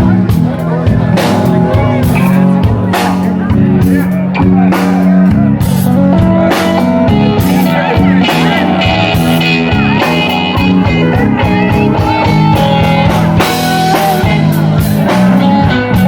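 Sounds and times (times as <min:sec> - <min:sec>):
lead guitar bending notes: 0:00.0 - 0:16.0
live band playing: 0:00.0 - 0:16.0.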